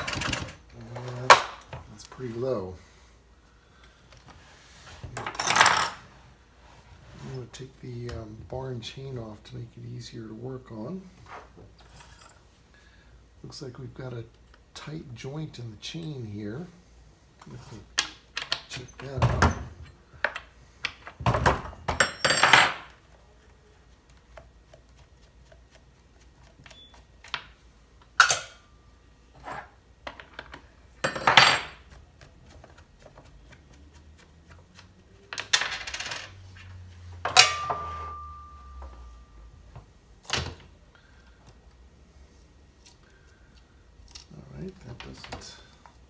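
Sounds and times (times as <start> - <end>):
metallic clinks of chainsaw parts: 28.2 - 28.6, 37.2 - 39.0
metal knock with ringing tone: 37.3 - 39.0.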